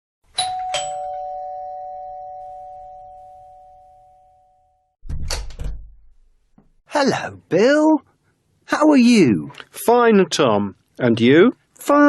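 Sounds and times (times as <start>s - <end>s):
two-tone doorbell chime: 0.4s - 4.9s
thud: 5.0s - 6.8s.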